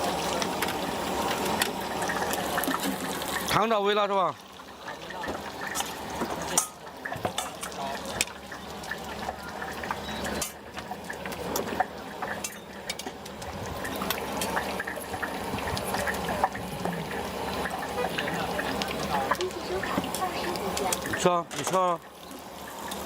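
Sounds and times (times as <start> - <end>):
liquid pouring and sloshing: 0.0 - 23.0
utensils clinking on pots: 4.7 - 22.0.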